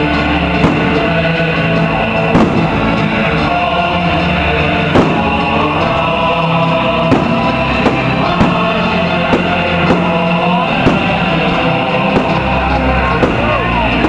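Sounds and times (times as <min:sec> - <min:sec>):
loud music with pitched tones: 0:00.0 - 0:14.0
sharp crack: 0:00.6 - 0:01.2, 0:02.3 - 0:03.0, 0:04.8 - 0:05.9, 0:07.0 - 0:14.0.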